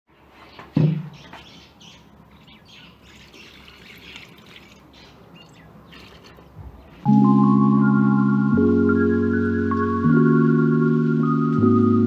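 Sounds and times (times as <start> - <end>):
birds chirping: 0.1 - 7.1.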